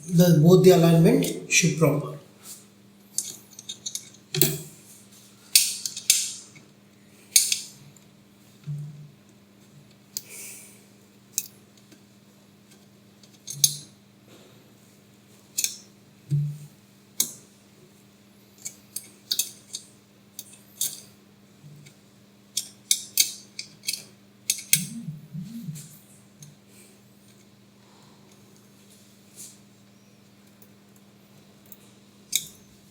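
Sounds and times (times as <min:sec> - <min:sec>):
steady low hum: 0:24.8 - 0:26.0.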